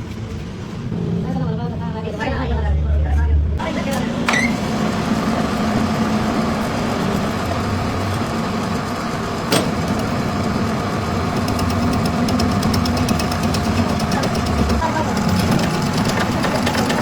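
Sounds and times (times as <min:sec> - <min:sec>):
machine motor humming: 0:03.6 - 0:17.0.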